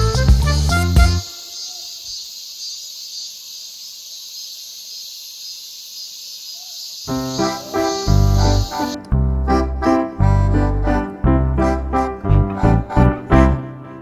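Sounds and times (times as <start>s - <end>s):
high-pitched hiss: 0.1s - 9.0s
keyboard background music: 7.1s - 14.0s.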